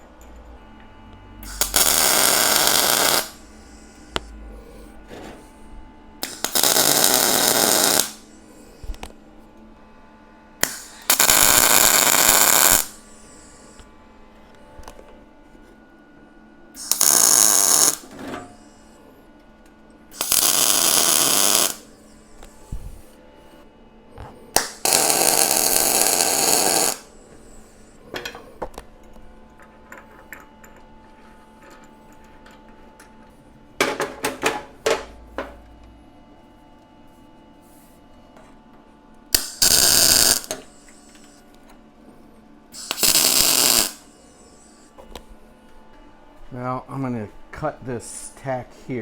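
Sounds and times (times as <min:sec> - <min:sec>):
short welding zaps: 0:01.4 - 0:03.5, 0:06.2 - 0:08.2, 0:10.6 - 0:13.0, 0:16.8 - 0:18.1, 0:20.1 - 0:21.9, 0:24.6 - 0:27.1, 0:39.4 - 0:40.9, 0:42.8 - 0:44.1
welder bursts: 0:01.4 - 0:04.3, 0:06.2 - 0:08.4, 0:10.6 - 0:13.8, 0:16.8 - 0:18.7, 0:20.1 - 0:23.0, 0:24.5 - 0:27.8, 0:39.3 - 0:41.4, 0:42.8 - 0:44.9.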